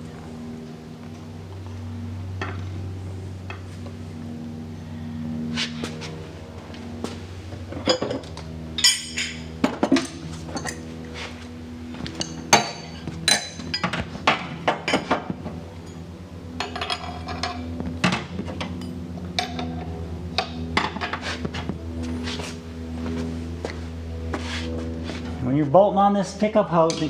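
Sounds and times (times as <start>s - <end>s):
metal tools clinking and tapping: 7.7s - 10.8s, 12.0s - 14.0s, 16.6s - 17.7s, 18.6s - 21.2s.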